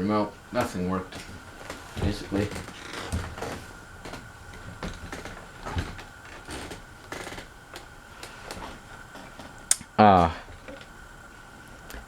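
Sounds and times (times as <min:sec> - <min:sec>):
faint high hum: 0:00.0 - 0:12.0.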